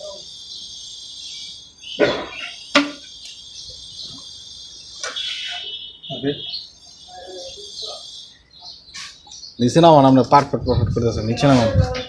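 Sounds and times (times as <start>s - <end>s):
insect chirring: 0.0s - 9.6s
sharp knocks: 2.8s - 3.0s.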